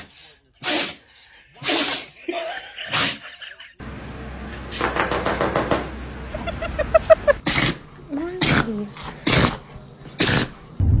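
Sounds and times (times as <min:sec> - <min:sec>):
dog sneezing: 0:00.6 - 0:01.0, 0:01.6 - 0:02.2, 0:02.9 - 0:03.2, 0:06.4 - 0:07.8, 0:10.2 - 0:10.6.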